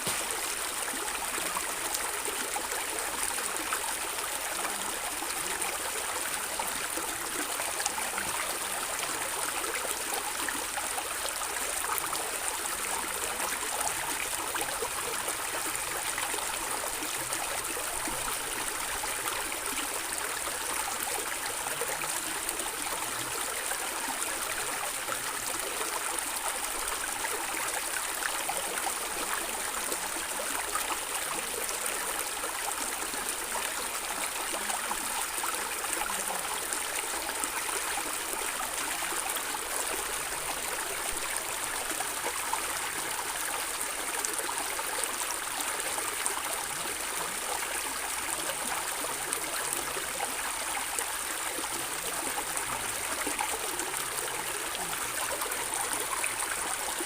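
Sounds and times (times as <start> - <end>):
stream water gurgling: 0.0 - 57.0.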